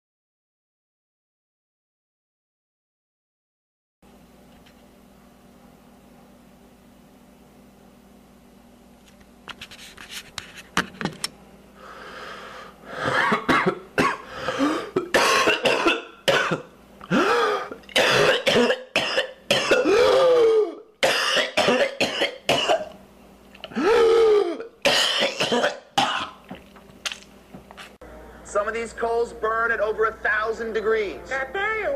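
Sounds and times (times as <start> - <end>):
rapid coughing fits: 12.9 - 23.0, 23.6 - 26.5.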